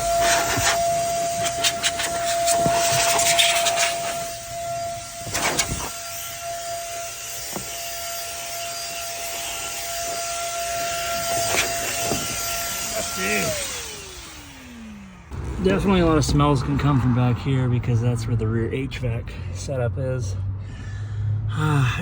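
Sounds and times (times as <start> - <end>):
electric air blower whine: 0.0 - 16.6.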